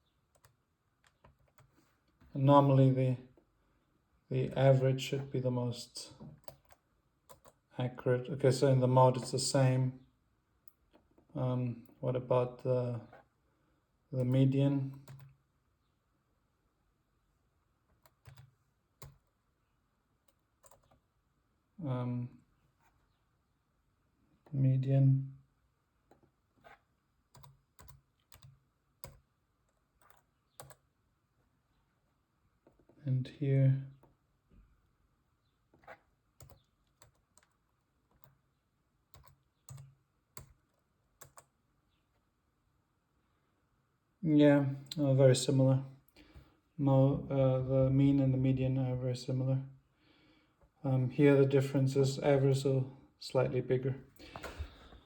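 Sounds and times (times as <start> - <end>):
computer keyboard keystrokes: 6.4 - 7.6, 18.0 - 19.3, 20.6 - 21.0, 27.4 - 29.2, 30.0 - 30.8, 39.1 - 41.5.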